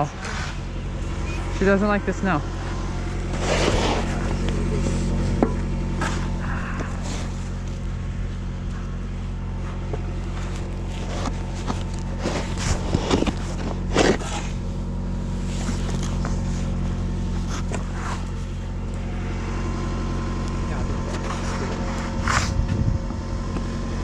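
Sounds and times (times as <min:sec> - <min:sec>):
engine idling: 0:00.0 - 0:24.0
snow shovel scraping: 0:02.6 - 0:05.2, 0:10.3 - 0:14.7.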